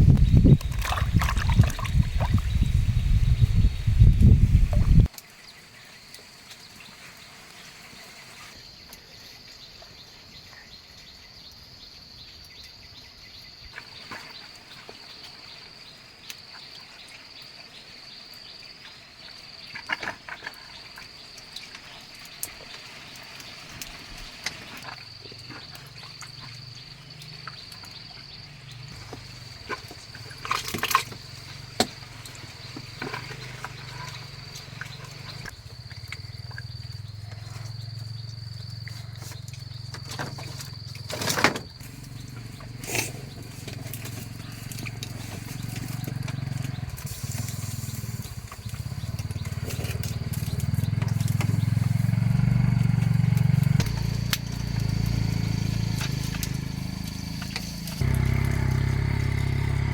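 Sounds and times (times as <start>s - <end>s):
insects chirring: 0.0s - 59.9s
low hum: 50.3s - 59.9s.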